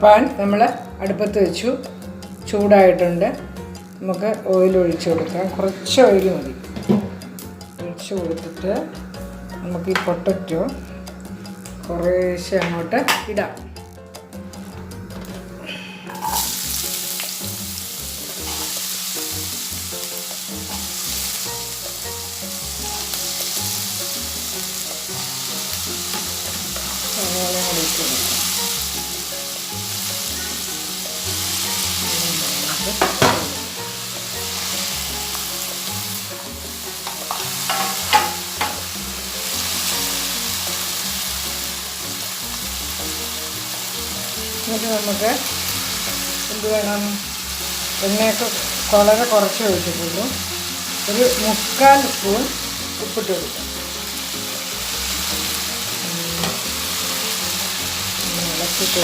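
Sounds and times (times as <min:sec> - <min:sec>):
potatoes sizzling in a pan: 0:00.0 - 0:59.0
utensil knocking against pan: 0:33.0 - 0:33.6, 0:37.0 - 0:38.8.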